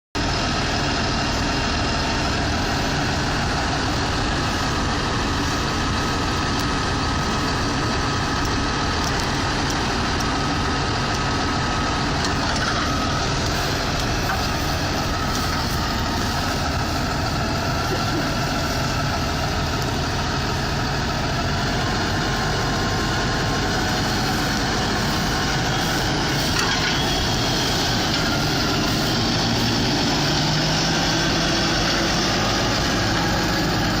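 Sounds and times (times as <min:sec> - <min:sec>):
tractor diesel engine running: 0:00.2 - 0:34.0.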